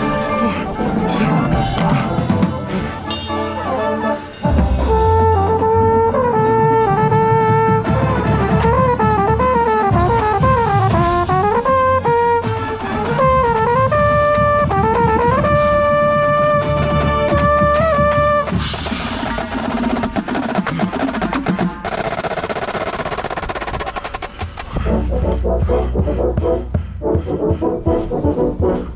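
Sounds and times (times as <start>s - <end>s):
brass hornline playing: 0.0s - 19.5s.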